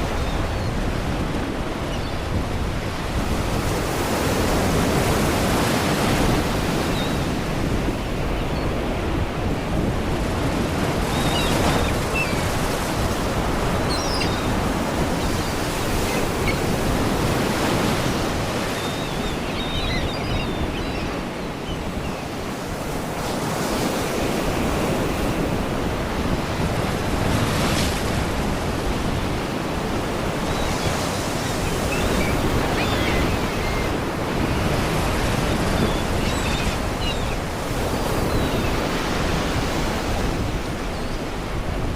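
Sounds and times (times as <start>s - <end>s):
waves washing against rocks: 2.5s - 41.9s
faint seagull cries: 13.7s - 16.9s.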